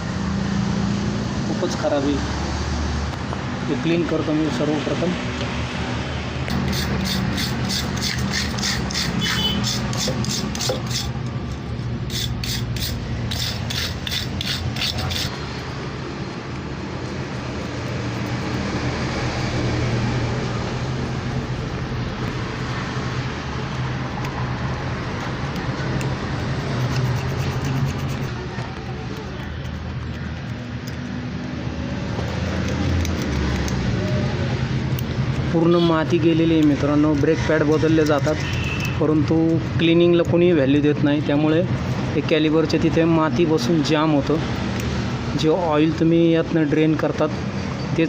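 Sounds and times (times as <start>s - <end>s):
brisk scrubbing strokes on metal: 6.5s - 11.2s, 12.0s - 15.6s, 26.6s - 28.5s.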